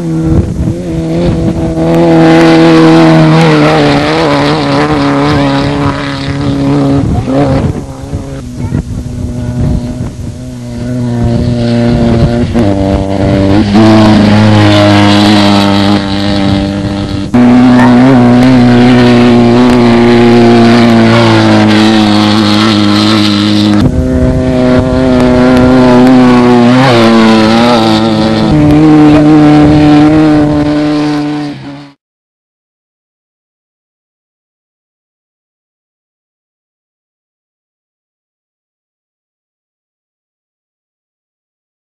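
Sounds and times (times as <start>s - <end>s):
race buggy engines revving high: 0.0s - 32.0s.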